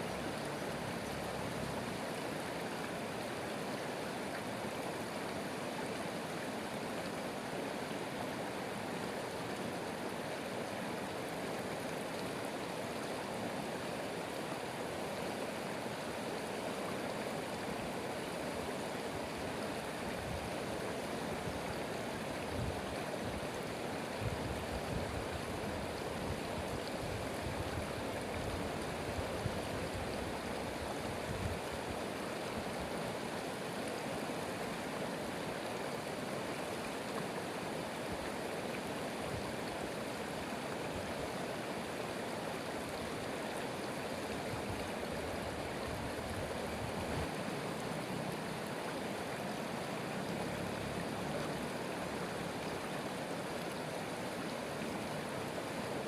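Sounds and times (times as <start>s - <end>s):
stream water rushing and babbling: 0.0s - 56.0s.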